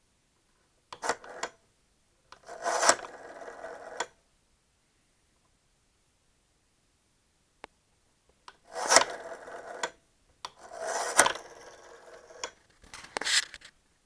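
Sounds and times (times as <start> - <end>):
dial clicks: 1.0 - 1.6, 2.3 - 4.2, 8.5 - 12.6
rotary phone dial whirring: 1.0 - 1.6, 2.4 - 4.2, 8.7 - 12.6.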